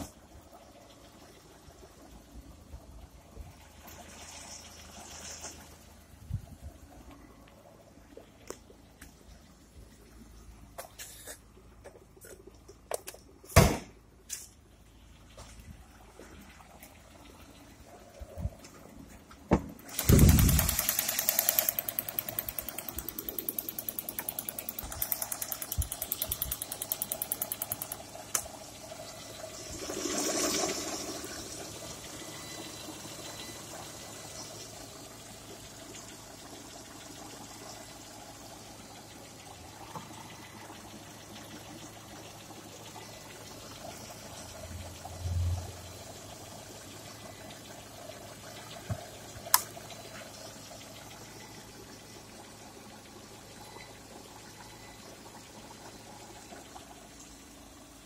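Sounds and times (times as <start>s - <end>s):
car engine knocking: 16.0s - 58.0s.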